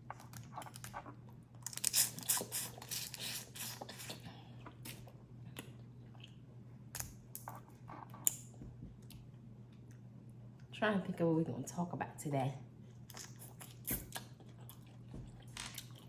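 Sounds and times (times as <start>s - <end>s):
shells cracking and chewing: 0.0s - 6.4s, 13.0s - 16.0s.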